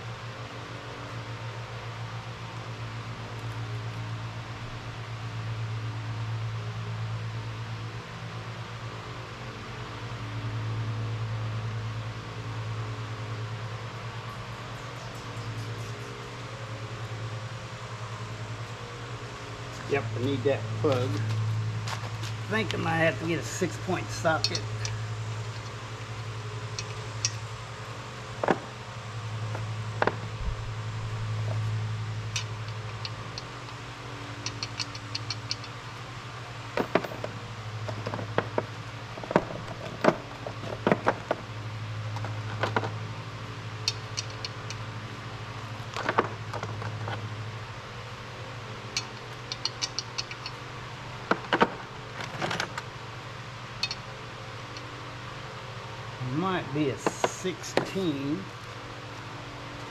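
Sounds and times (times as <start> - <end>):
steady low hum: 0.0 - 59.9
metal tools clinking and rattling: 23.3 - 26.1.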